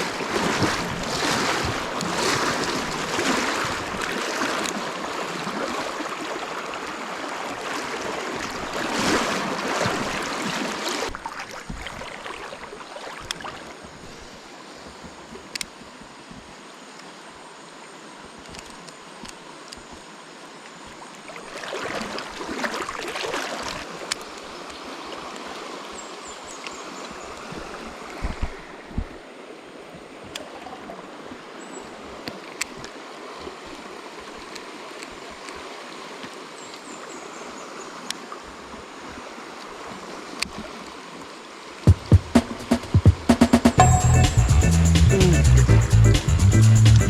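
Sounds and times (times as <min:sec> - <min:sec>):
water splashing: 0:00.0 - 0:14.0, 0:21.3 - 0:25.6
stream flowing over rocks: 0:00.0 - 0:14.7, 0:20.2 - 0:42.2.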